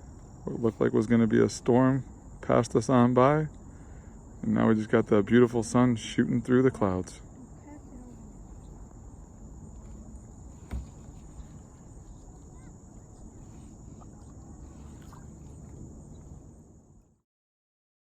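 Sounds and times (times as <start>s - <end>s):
insects droning: 0.0s - 17.2s
low background rumble: 0.0s - 17.2s
knock: 10.7s - 11.1s.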